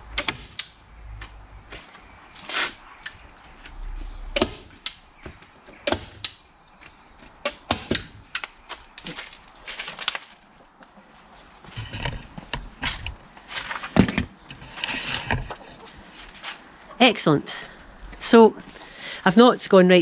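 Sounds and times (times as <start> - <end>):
tarp rustling: 8.0 - 16.8.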